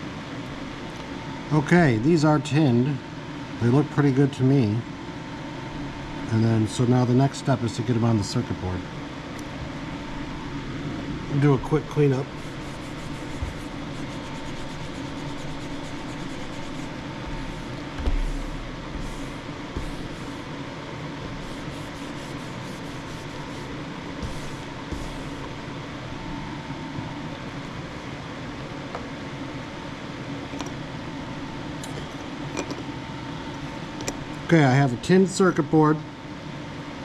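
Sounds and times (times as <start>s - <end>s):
faint constant whine: 0.0s - 37.0s
fan whirring: 0.0s - 37.0s
dull thump: 18.0s - 20.0s.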